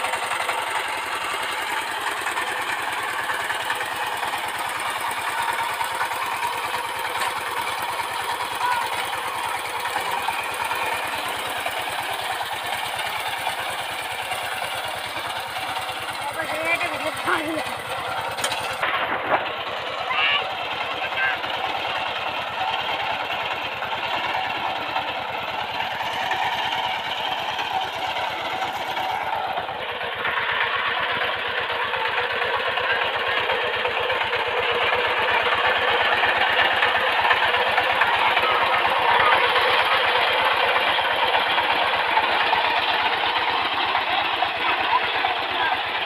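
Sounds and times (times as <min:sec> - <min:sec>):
diesel engine chugging: 0:00.0 - 0:46.0.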